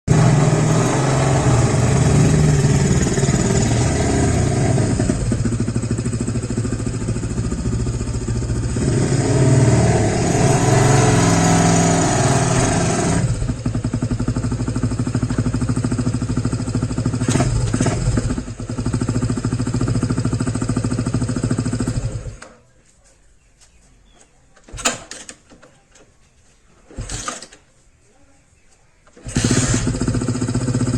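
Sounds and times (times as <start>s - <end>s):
motorcycle engine running: 0.0s - 22.4s, 29.2s - 30.9s.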